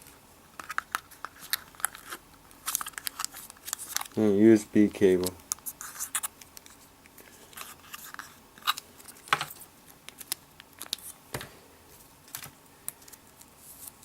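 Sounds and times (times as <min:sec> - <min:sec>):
packaging clicks and rustles: 0:00.5 - 0:04.2, 0:05.1 - 0:11.5.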